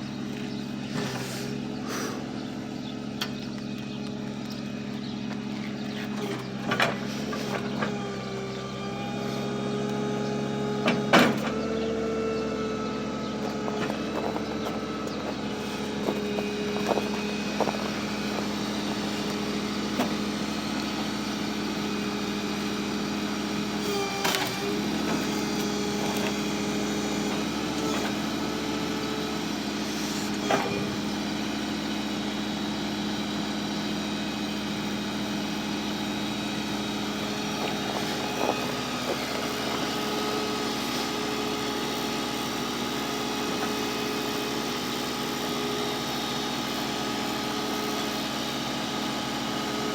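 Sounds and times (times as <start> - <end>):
car engine running: 0.0 - 49.9.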